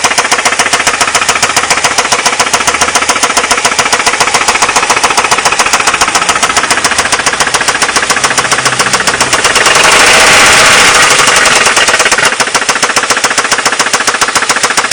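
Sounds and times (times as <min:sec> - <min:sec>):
car engine running: 0:00.0 - 0:14.9
fast even rattle: 0:00.0 - 0:14.9.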